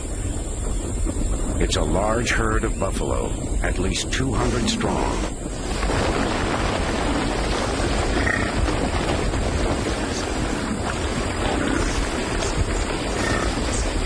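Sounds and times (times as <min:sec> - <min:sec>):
herd low rumble: 0:00.0 - 0:14.0
buffalo calls: 0:08.1 - 0:08.6, 0:13.1 - 0:13.8.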